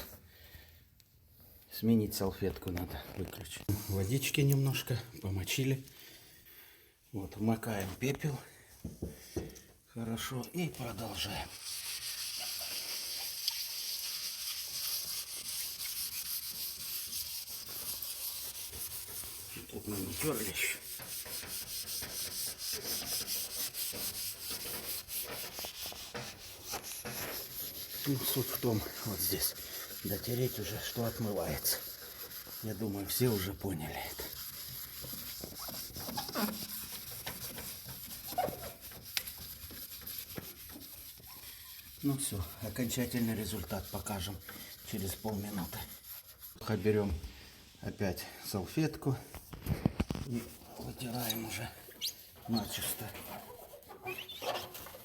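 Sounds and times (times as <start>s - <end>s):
napkin scrubbing glass: 10.5s - 46.8s, 50.4s - 55.0s
cloth wiping glass: 10.6s - 47.8s, 50.0s - 55.0s
cloth squeaking on glass: 36.0s - 36.8s, 51.0s - 55.0s.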